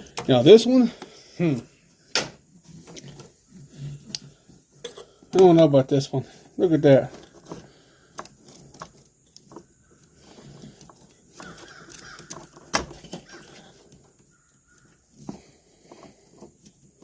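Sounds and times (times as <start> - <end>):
bird calling: 11.3 - 15.1.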